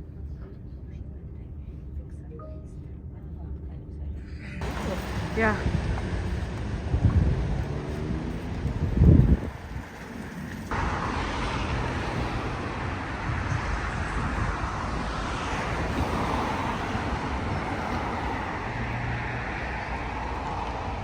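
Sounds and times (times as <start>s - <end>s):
low engine hum: 4.6s - 21.0s
road traffic passing: 4.6s - 21.0s.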